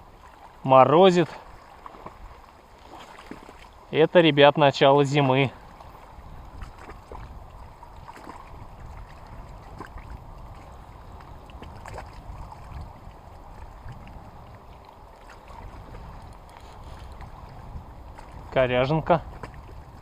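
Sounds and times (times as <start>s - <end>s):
small waves lapping: 0.0s - 20.0s
wind buffeting microphone: 5.3s - 20.0s.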